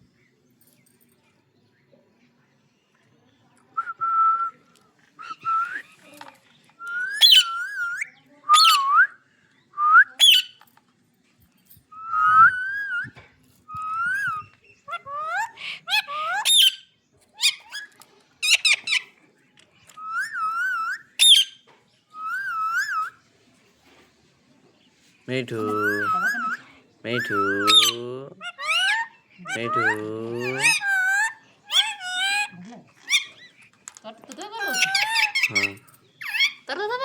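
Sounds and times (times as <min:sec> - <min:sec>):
parrot high squeaks: 0:07.1 - 0:08.8, 0:10.2 - 0:10.6, 0:13.9 - 0:19.1, 0:20.0 - 0:23.2, 0:25.7 - 0:33.7, 0:34.5 - 0:36.7
parrot whistling: 0:27.2 - 0:28.0, 0:28.6 - 0:32.5.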